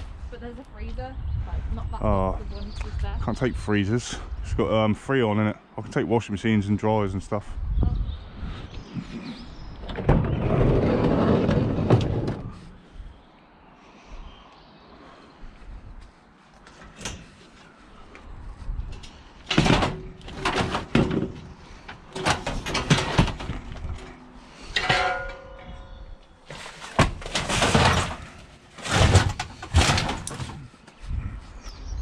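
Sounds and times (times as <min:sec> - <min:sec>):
scrap metal clanking and scraping: 0:09.1 - 0:12.9, 0:18.9 - 0:30.8.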